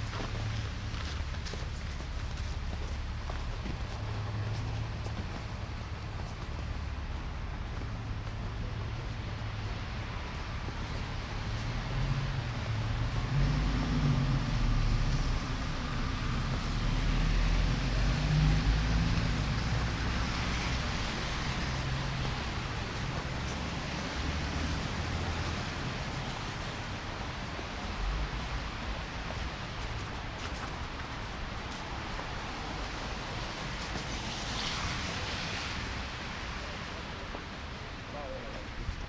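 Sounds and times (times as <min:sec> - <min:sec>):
street traffic: 0:00.0 - 0:39.0
vehicle passing by: 0:09.5 - 0:30.5.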